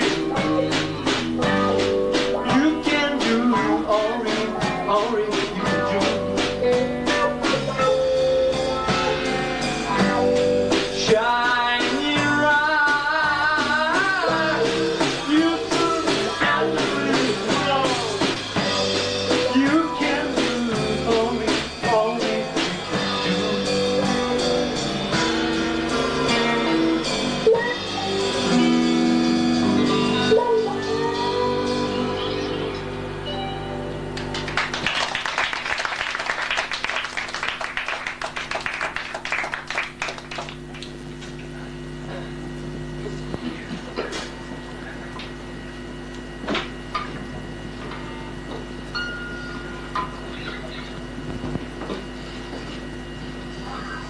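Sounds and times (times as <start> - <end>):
bending guitar lead line: 0.0 - 12.8
drum beat: 0.0 - 26.6
bass guitar: 0.0 - 35.8, 36.6 - 54.0
electric guitars: 0.0 - 54.0
steady low hum: 0.0 - 54.0
audience clapping: 34.2 - 41.6.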